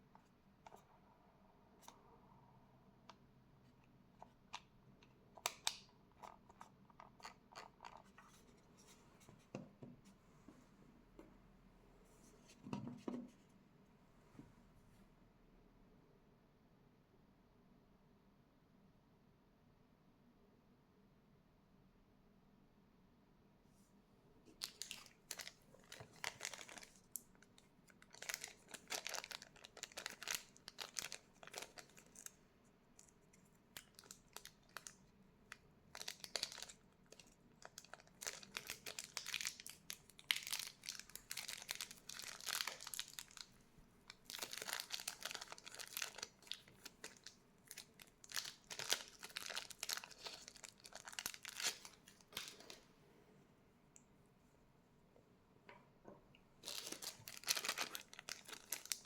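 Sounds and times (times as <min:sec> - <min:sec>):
packaging crinkling: 0:24.6 - 0:32.4, 0:33.0 - 0:35.0, 0:35.9 - 0:52.8, 0:56.6 - 0:59.0.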